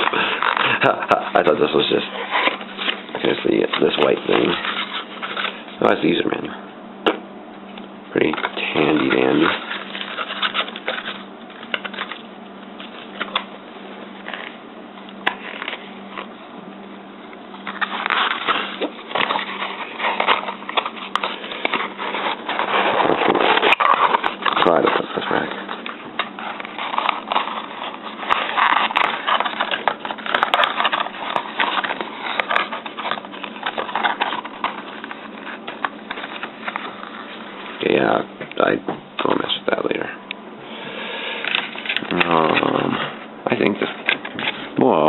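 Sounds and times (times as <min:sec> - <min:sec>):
packaging crinkling: 0:00.0 - 0:05.8, 0:08.2 - 0:13.6, 0:17.5 - 0:38.2
cardboard and paper rustling: 0:00.0 - 0:06.4, 0:08.2 - 0:13.6, 0:15.2 - 0:16.3, 0:17.5 - 0:39.6, 0:41.4 - 0:45.0.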